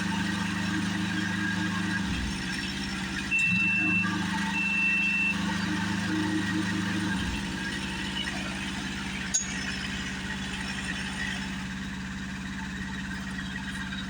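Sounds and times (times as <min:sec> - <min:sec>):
large engine idling: 0:00.0 - 0:14.0
sharp metallic clink: 0:09.3 - 0:09.8.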